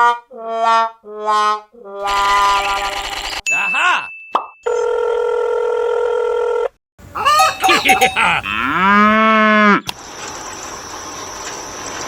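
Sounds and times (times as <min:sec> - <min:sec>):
long low rising falling call: 0:07.2 - 0:09.2.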